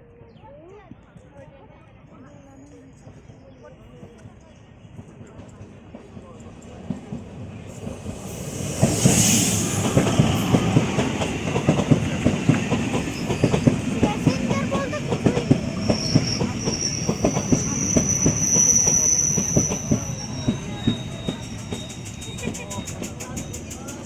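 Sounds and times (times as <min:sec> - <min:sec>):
train wheels clacking over rail joints: 0:07.8 - 0:24.0
high wheel squeal: 0:15.5 - 0:24.0.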